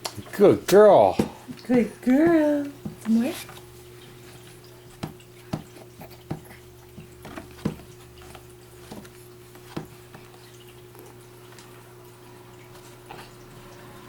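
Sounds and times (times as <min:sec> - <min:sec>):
plastic spoon knocking on tray: 0:02.1 - 0:03.1, 0:04.9 - 0:10.2.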